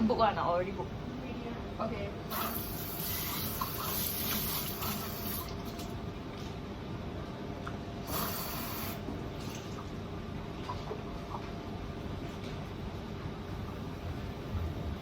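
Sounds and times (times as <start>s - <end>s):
tap water running into sink: 2.3s - 6.0s.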